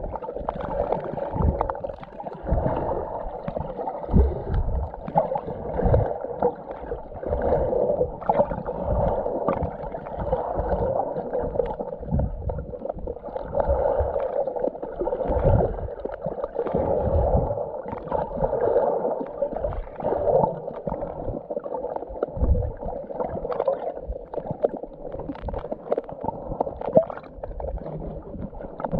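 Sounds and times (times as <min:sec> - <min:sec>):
underwater water sloshing and gurgling: 0:00.0 - 0:28.9.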